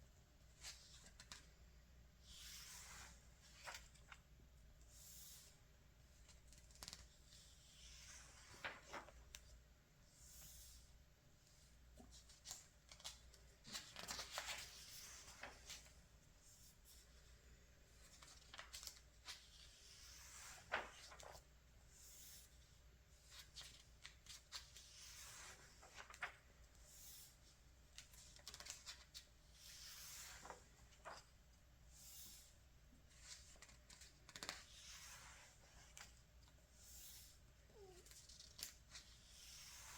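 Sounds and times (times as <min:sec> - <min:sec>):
magazine pages rustling: 0:08.2 - 0:09.5, 0:12.1 - 0:16.0, 0:18.0 - 0:21.5, 0:23.2 - 0:26.6, 0:27.4 - 0:31.4, 0:33.1 - 0:36.2.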